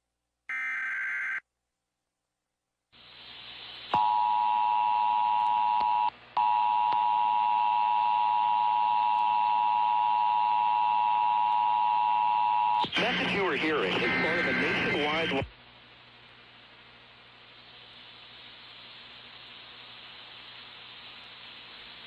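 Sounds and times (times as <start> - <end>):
static hiss: 2.9 - 11.9, 12.6 - 22.0
data tone burst: 10.1 - 15.5.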